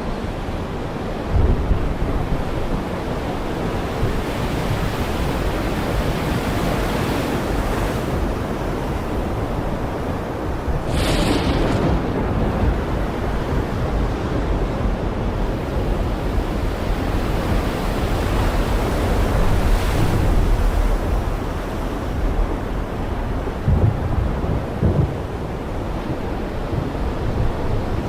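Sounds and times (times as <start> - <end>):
heavy rain pouring: 10.7 - 13.6.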